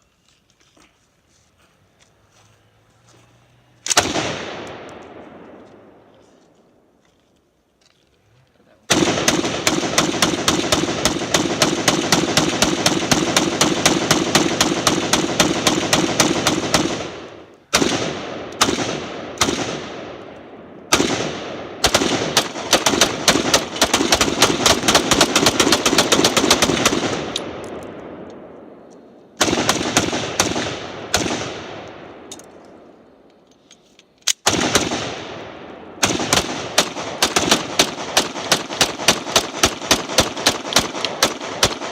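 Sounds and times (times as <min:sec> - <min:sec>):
single gunshots: 0:03.9 - 0:05.6, 0:08.9 - 0:20.2, 0:20.9 - 0:28.3, 0:29.4 - 0:32.3, 0:34.4 - 0:41.9
rapid gunfire: 0:08.9 - 0:20.0, 0:20.9 - 0:27.3, 0:29.4 - 0:31.8, 0:36.0 - 0:41.9.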